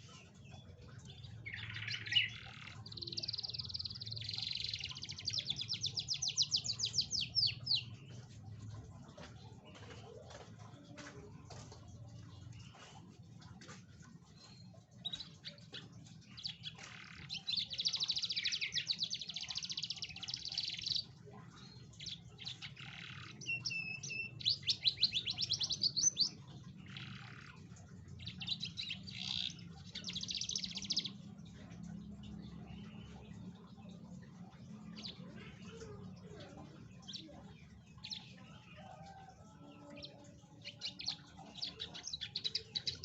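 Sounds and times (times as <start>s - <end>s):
canary singing trills: 0.0s - 43.0s.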